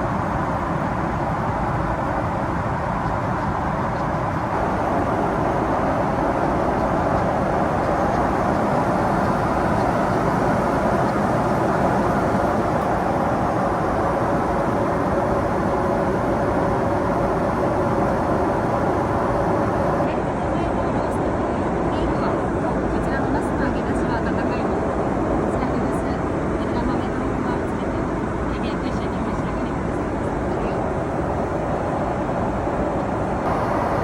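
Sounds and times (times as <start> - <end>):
airliner cabin noise: 0.0 - 34.0.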